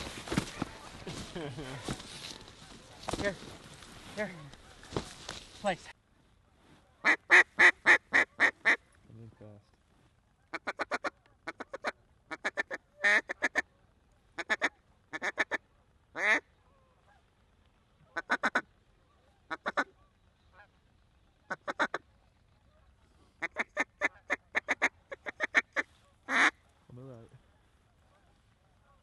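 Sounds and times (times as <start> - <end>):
duck call quacks: 7.0 - 8.8, 10.5 - 13.6, 14.4 - 15.6, 16.2 - 16.5, 18.1 - 18.7, 19.5 - 20.7, 21.5 - 22.0, 23.4 - 26.6.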